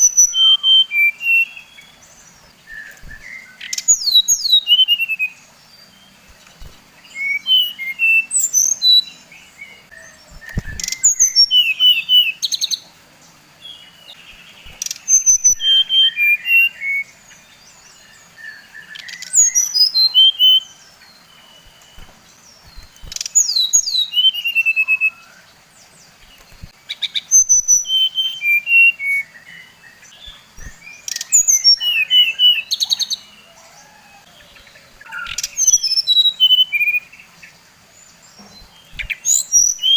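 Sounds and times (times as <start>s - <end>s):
flycatcher singing high whistled notes: 10.3s - 12.6s, 14.6s - 17.1s, 21.5s - 25.3s, 26.2s - 29.4s, 30.2s - 32.9s, 38.6s - 39.9s.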